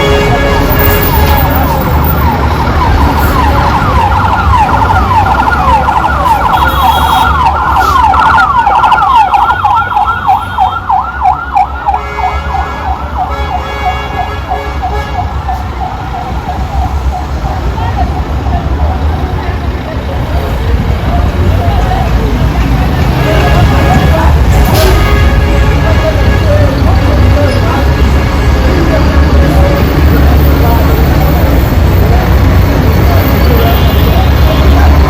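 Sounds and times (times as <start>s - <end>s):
low rumble of road traffic: 0.0s - 35.0s
siren yelping: 1.6s - 13.3s, 15.2s - 18.8s.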